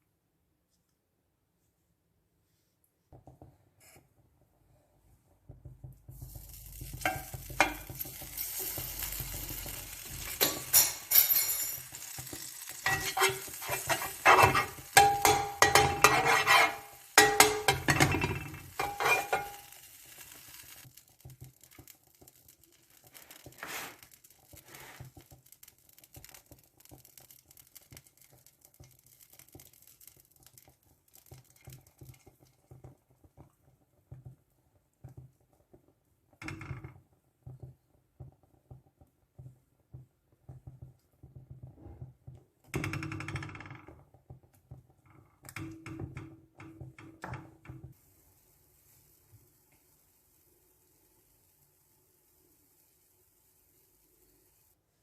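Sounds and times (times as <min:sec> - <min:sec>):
frying sizzle: 0:05.5 - 0:55.0
utensil clattering against cookware: 0:06.8 - 0:19.7.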